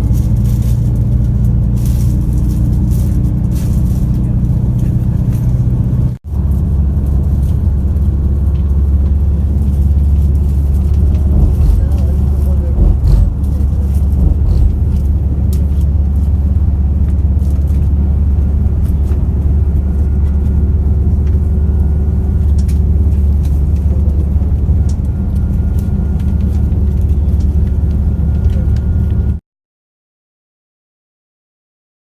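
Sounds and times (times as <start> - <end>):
vehicle rumble from inside: 0.0 - 29.4
faint clicks and rattles: 7.4 - 16.3.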